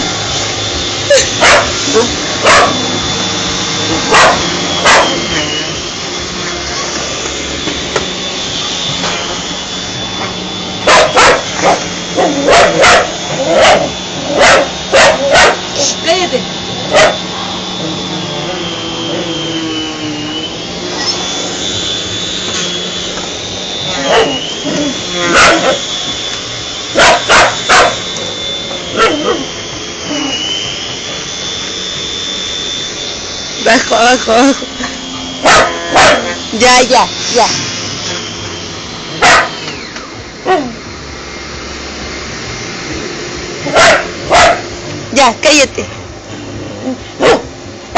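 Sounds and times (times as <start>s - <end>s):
vacuum cleaner running: 0.0s - 47.9s
dog barking: 1.4s - 1.7s, 2.4s - 2.8s, 4.1s - 5.2s, 10.9s - 15.6s, 16.9s - 17.2s, 24.0s - 24.4s, 25.3s - 25.8s, 27.0s - 28.0s, 29.0s - 29.4s, 35.4s - 36.4s, 39.2s - 39.6s, 43.7s - 44.7s, 47.2s - 47.5s.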